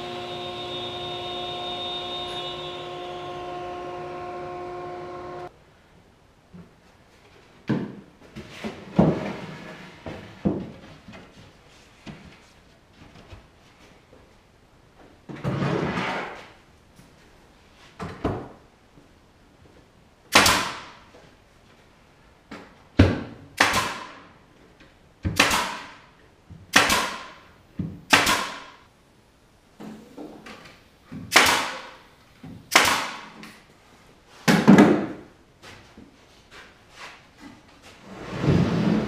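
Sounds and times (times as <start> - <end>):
nails hammered into plywood: 25.2 - 26.0, 26.7 - 27.4, 28.1 - 28.8, 31.2 - 31.9, 32.7 - 33.3.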